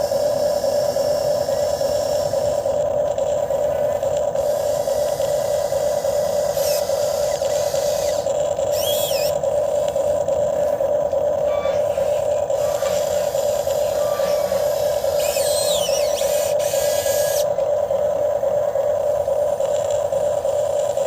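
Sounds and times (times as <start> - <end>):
hydraulic pump motor humming: 0.0 - 21.0
high warbling chirps: 7.6 - 9.4, 11.5 - 17.4.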